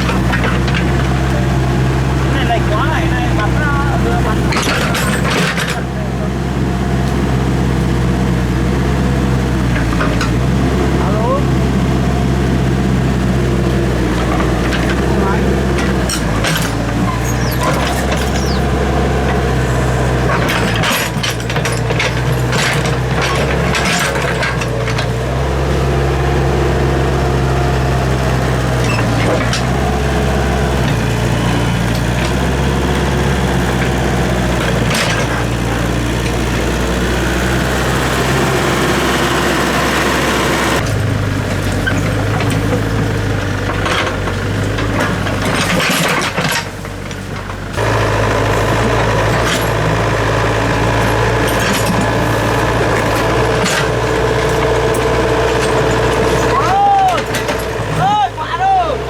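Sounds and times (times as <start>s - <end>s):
diesel engine running: 0.0s - 59.0s
metallic knocks and clanks: 15.7s - 25.3s, 43.7s - 48.0s.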